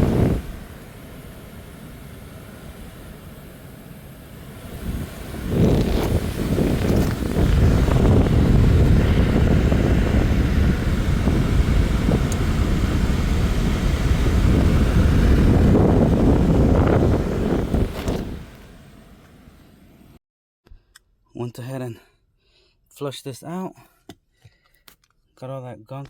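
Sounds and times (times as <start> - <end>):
water rushing through drain line: 4.3 - 18.7.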